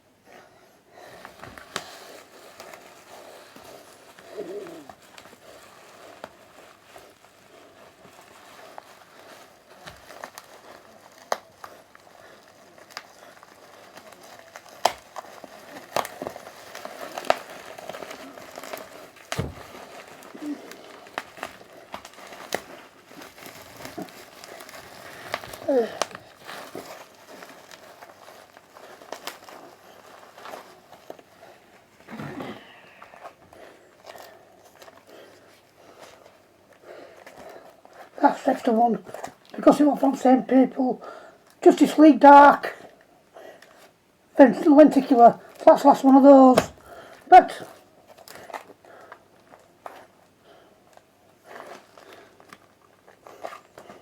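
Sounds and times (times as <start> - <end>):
packaging crinkling: 1.0 - 54.0.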